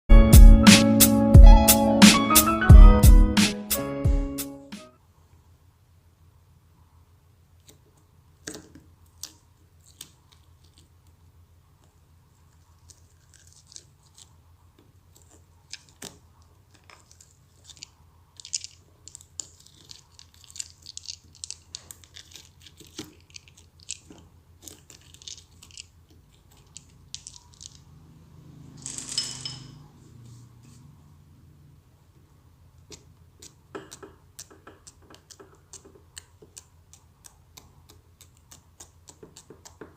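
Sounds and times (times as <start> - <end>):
slime squish: 7.6 - 27.9, 32.3 - 39.9.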